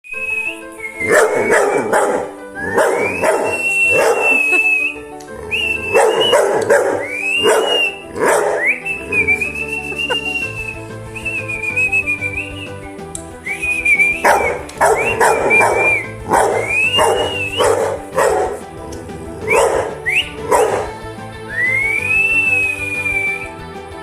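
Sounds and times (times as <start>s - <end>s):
person whistling high notes: 0.0s - 18.7s, 19.4s - 23.6s
dog howling: 1.0s - 10.4s, 14.2s - 21.0s.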